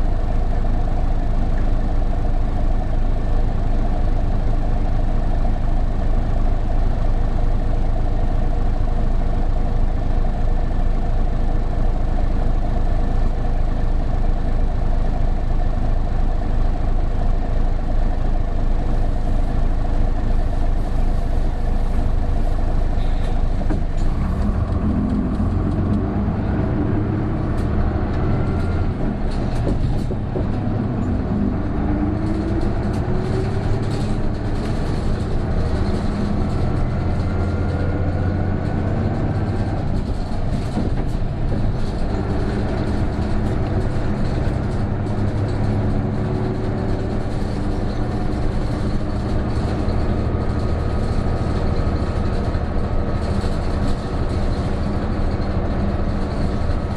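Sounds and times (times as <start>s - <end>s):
bus body rattling: 0.0s - 56.9s
bus diesel engine under load: 0.0s - 56.9s.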